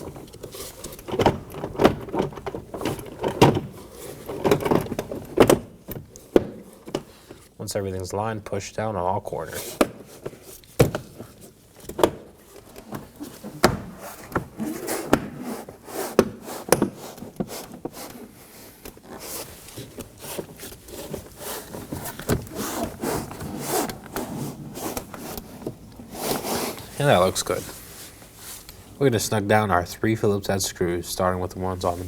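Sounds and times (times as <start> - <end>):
hands rubbing over panel: 12.6 - 28.9.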